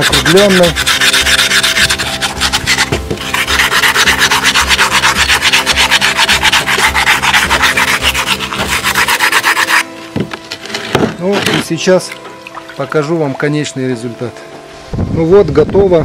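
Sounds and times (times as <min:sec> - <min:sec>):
sandpaper scraping brick: 0:00.0 - 0:09.9.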